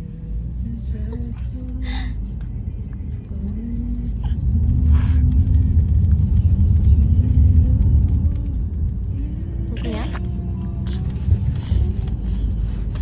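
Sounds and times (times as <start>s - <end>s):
loud low rumble: 0.0s - 13.0s.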